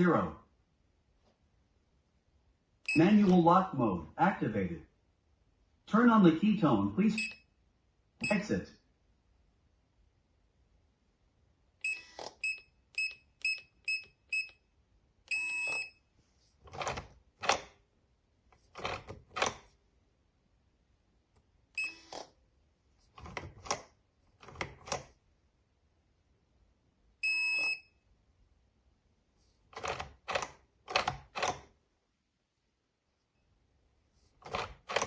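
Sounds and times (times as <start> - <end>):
keypad beeping: 7.1 - 7.5, 11.8 - 14.6, 15.3 - 16.0, 21.8 - 22.3, 27.2 - 28.0.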